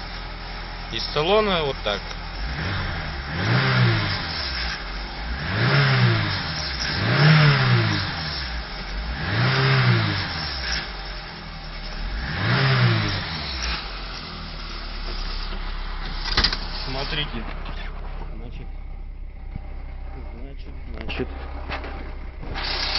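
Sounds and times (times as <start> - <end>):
car engine revving: 0.0 - 22.9
engine rattle noise: 9.9 - 22.9.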